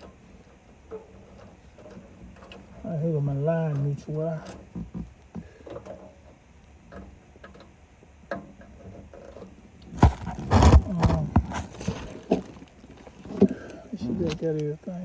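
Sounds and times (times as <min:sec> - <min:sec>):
small clicks and scrapes: 0:00.0 - 0:02.8, 0:03.7 - 0:14.7
rustling and knocks: 0:08.3 - 0:13.7.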